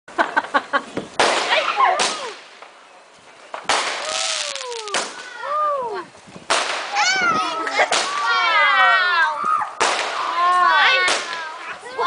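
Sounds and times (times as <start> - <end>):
fireworks bangs with crackle: 1.0 - 2.8, 3.5 - 5.4, 6.3 - 8.6, 9.8 - 11.6
firecracker cracks: 1.1 - 2.8, 3.6 - 5.4, 6.4 - 7.1, 7.7 - 8.4, 9.8 - 11.6.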